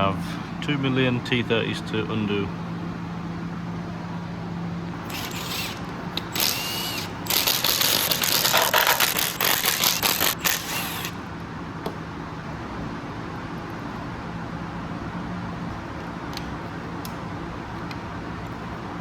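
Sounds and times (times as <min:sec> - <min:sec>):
power tool whirring: 0:04.9 - 0:11.2.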